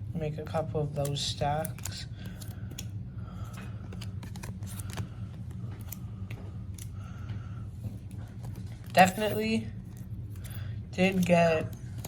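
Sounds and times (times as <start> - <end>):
steady low hum: 0.0 - 12.0
cards clicking and sliding: 1.0 - 7.1.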